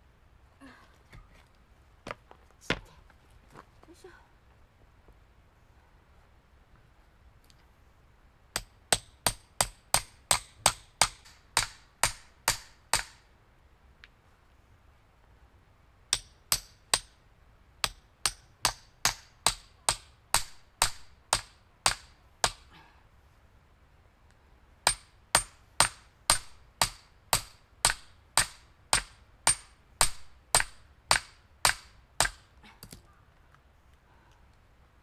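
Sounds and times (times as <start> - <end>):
hammer striking steel wedge: 8.6 - 13.2, 16.1 - 17.2, 17.8 - 22.7, 24.9 - 32.5.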